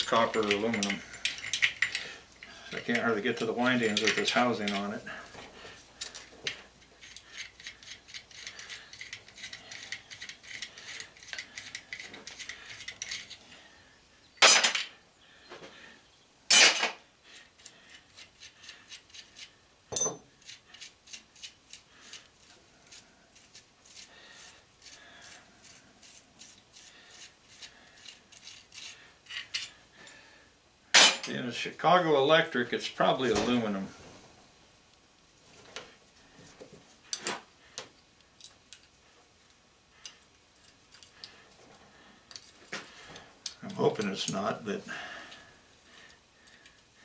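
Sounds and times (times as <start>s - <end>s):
sharp metal clank: 19.9s - 20.3s, 31.0s - 31.3s.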